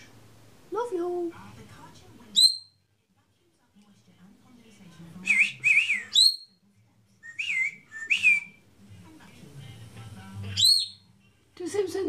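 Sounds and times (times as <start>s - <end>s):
parrot whistling: 2.4s - 2.8s, 5.2s - 6.5s, 7.2s - 8.6s, 10.5s - 11.1s.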